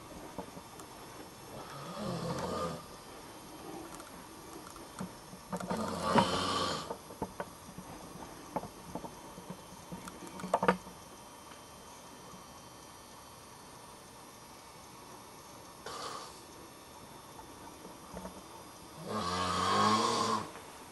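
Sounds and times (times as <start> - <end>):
person snoring: 1.6 - 2.9, 5.8 - 6.9, 19.0 - 20.5.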